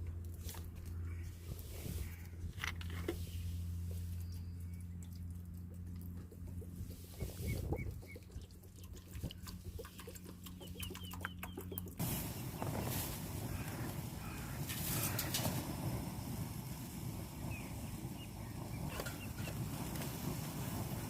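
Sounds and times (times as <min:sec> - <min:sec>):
steady low hum: 0:00.0 - 0:21.0
bird chirps: 0:10.4 - 0:12.9.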